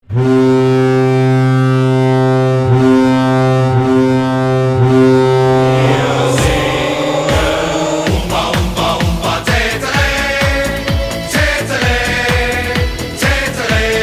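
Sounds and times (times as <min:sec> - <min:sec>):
goal song music: 0:05.0 - 0:09.8.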